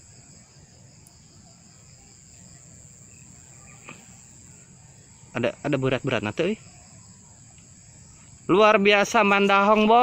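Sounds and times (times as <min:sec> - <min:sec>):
high-pitched insect chorus: 0:00.0 - 0:10.0
faint click: 0:01.0 - 0:01.2.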